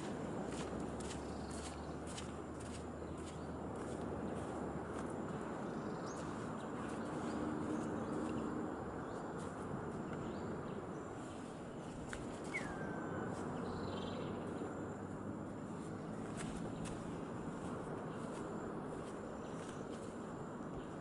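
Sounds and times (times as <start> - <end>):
faint bird chirps: 12.4 - 14.3.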